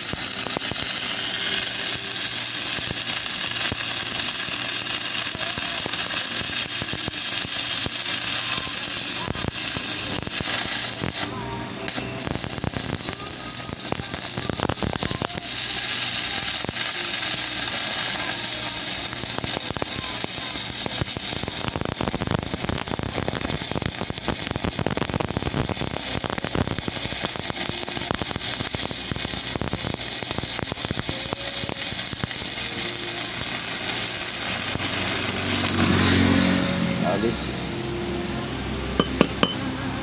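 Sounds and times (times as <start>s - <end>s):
arc welding crackle and sizzle: 0.0s - 39.8s.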